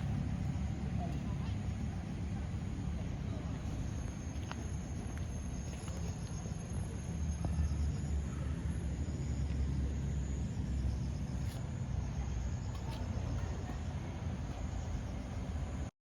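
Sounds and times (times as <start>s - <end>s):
steady low rumble: 0.0s - 15.9s.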